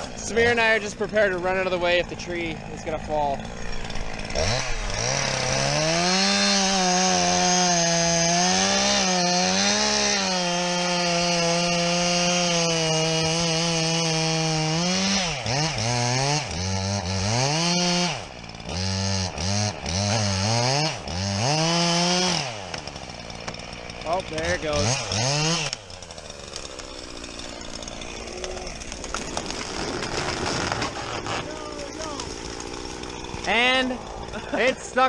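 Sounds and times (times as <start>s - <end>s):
chainsaw cutting tree trunk: 0.0s - 35.0s.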